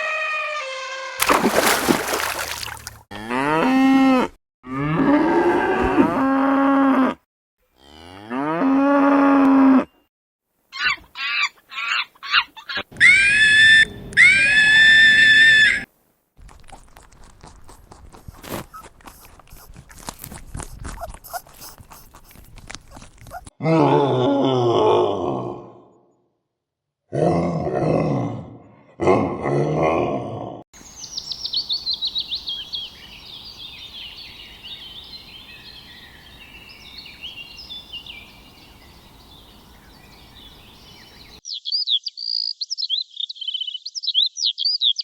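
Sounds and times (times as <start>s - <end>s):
cattle mooing: 3.1s - 7.2s.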